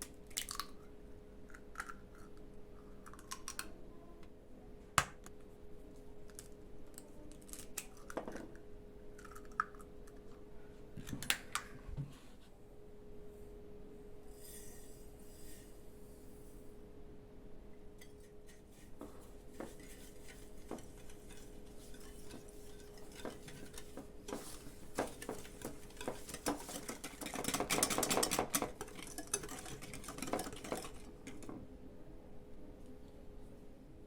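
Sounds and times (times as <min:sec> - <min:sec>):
rapid whisking strokes: 0:18.0 - 0:31.6
utensil clinking in a bowl: 0:18.0 - 0:31.6.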